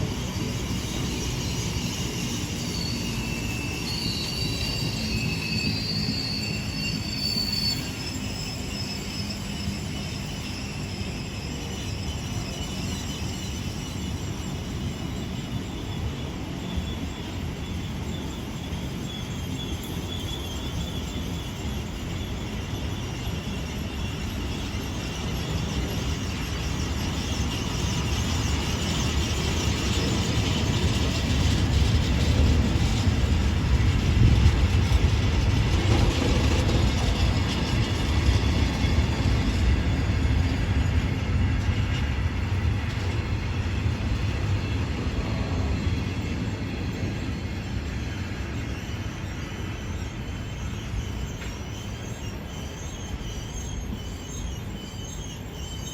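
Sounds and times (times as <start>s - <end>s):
freight train wheels rumbling: 0.0s - 55.9s.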